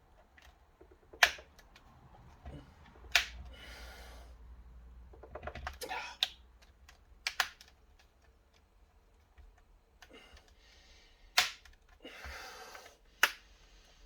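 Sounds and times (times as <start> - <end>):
plastic laptop casing clicks: 6.6 - 8.3.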